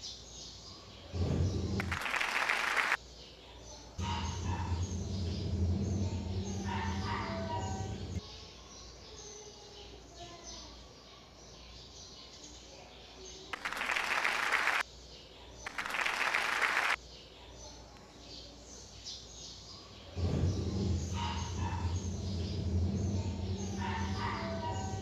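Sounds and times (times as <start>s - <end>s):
loud low steady sound: 1.2s - 2.1s, 4.0s - 8.2s, 20.2s - 25.0s
people clapping: 1.7s - 3.0s, 13.5s - 14.8s, 15.7s - 17.0s.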